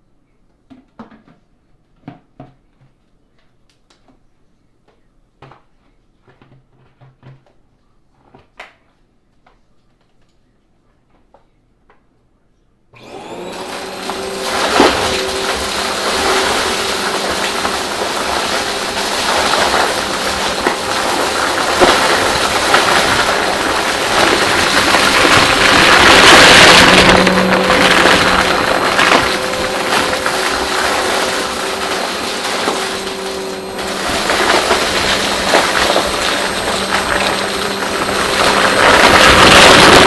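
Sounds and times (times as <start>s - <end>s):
vacuum cleaner running: 13.0s - 40.0s.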